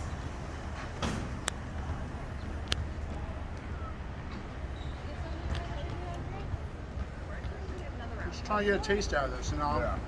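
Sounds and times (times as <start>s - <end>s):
low traffic rumble: 0.0s - 10.0s.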